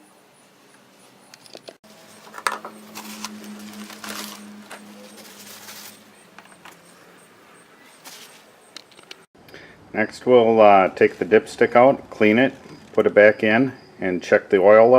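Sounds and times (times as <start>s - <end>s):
clinking and rustling: 1.4s - 7.0s.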